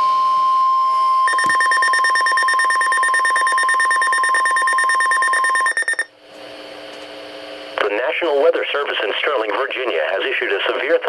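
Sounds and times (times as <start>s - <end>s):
steady alarm tone: 1.0s - 6.1s
rapidly pulsing alarm beep: 1.3s - 6.1s.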